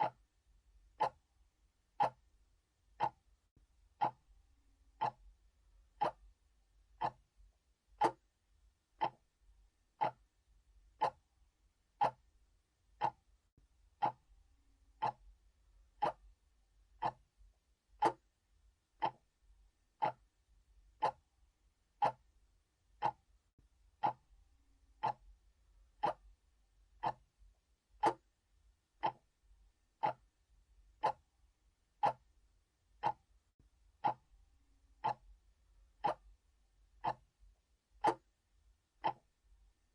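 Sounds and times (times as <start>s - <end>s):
clock ticking: 0.0s - 0.3s, 0.9s - 1.3s, 2.0s - 2.3s, 2.9s - 3.3s, 3.9s - 4.3s, 4.9s - 8.4s, 9.0s - 9.3s, 9.9s - 11.3s, 11.9s - 12.3s, 13.0s - 13.3s, 13.9s - 14.3s, 15.0s - 16.4s, 17.0s - 17.4s, 18.0s - 18.4s, 19.0s - 21.3s, 21.9s - 22.4s, 23.0s - 23.3s, 24.0s - 27.4s, 28.0s - 28.4s, 29.0s - 30.4s, 31.0s - 32.4s, 33.0s - 33.4s, 34.0s - 34.4s, 35.0s - 36.4s, 37.0s - 39.7s.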